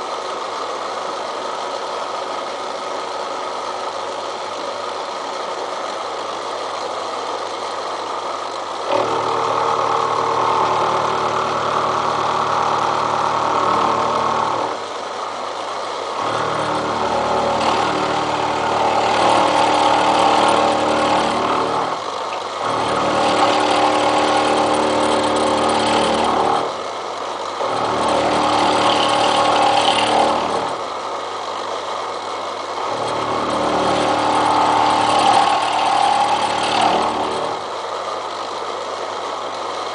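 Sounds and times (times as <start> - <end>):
milling machine milling steel: 8.8 - 38.9.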